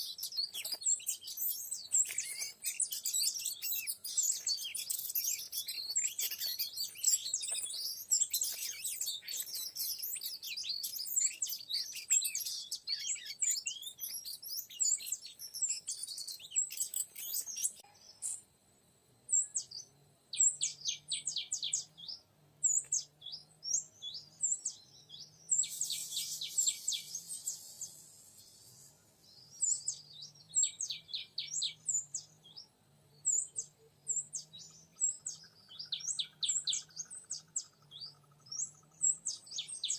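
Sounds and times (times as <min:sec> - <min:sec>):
bird song chirps and whistles: 0:00.0 - 0:18.5, 0:19.3 - 0:39.9.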